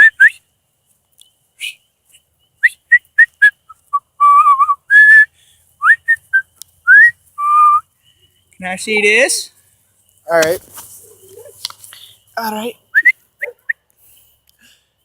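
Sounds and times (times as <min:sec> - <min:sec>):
person whistling: 0:00.0 - 0:00.4, 0:02.6 - 0:07.8, 0:13.0 - 0:13.7.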